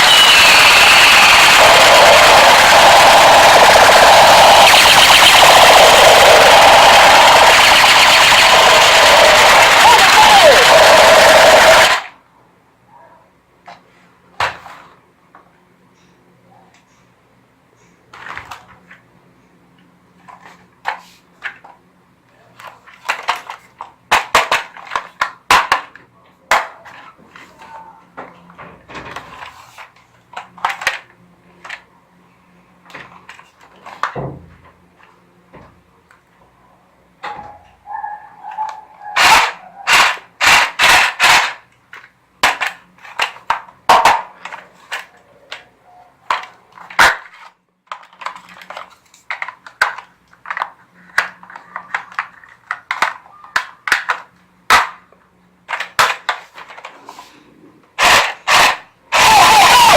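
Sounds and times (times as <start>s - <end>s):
toy guns snapping and firing: 0.0s - 12.2s, 23.0s - 27.0s, 30.4s - 31.8s, 38.7s - 45.6s, 46.3s - 55.0s, 55.7s - 57.0s, 58.0s - 59.9s.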